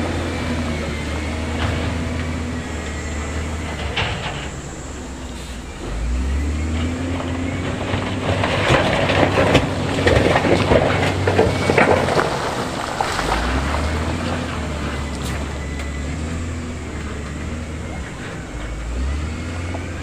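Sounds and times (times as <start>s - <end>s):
diesel engine working hard: 0.0s - 20.0s
rocks clattering and tumbling: 6.6s - 20.0s.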